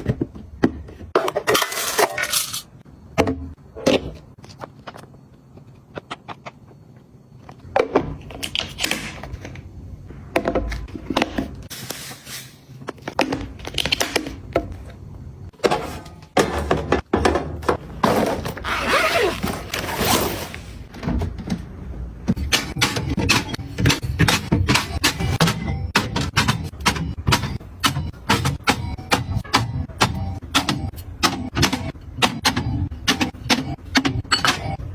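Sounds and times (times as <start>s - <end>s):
household items knocking and clattering: 15.5s - 18.6s, 19.4s - 34.8s.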